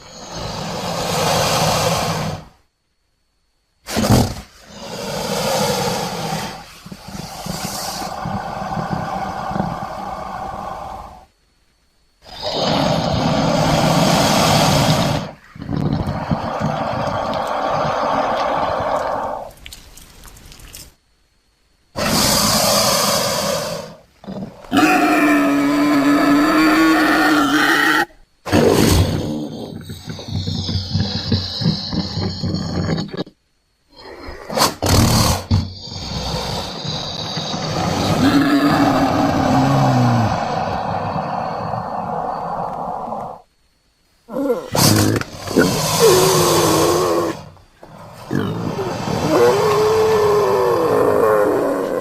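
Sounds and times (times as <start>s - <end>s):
creature growling: 3.9s - 11.3s, 12.2s - 19.6s, 22.0s - 43.5s, 44.3s - 52.0s
faint crackle: 5.5s - 12.4s, 14.1s - 21.8s
long steady bellow: 44.3s - 52.0s.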